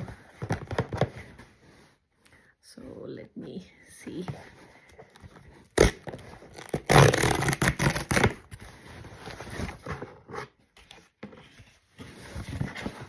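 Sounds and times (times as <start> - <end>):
packaging tearing and rustling: 5.7 - 10.1.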